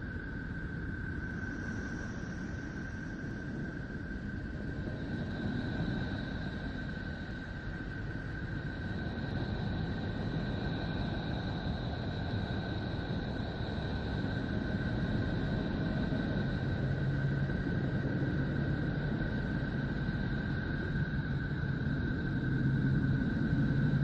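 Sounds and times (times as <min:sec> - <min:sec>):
steady rumbling drone: 0:00.0 - 0:24.0.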